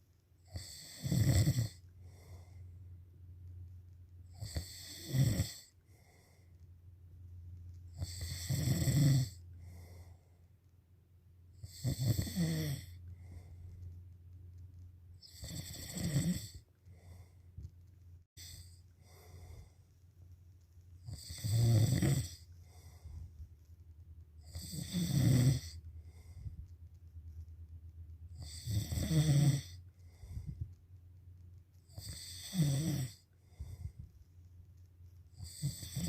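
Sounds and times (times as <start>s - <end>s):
quiet breathing: 0.1s - 7.0s, 9.2s - 10.7s, 11.6s - 27.5s, 28.3s - 31.0s, 31.7s - 36.0s
loud snoring: 0.5s - 1.8s, 4.3s - 5.7s, 8.0s - 9.4s, 11.6s - 13.0s, 15.2s - 16.6s, 21.0s - 22.4s, 24.4s - 25.8s, 28.4s - 29.8s, 31.9s - 33.2s, 35.4s - 36.0s.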